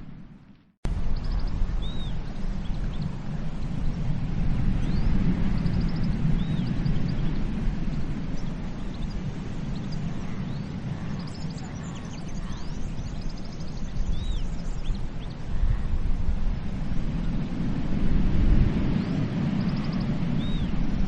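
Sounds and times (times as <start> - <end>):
small birds chirping: 0.9 - 4.1, 4.7 - 16.4, 18.9 - 20.9
ocean surf washing onto beach: 15.0 - 21.0.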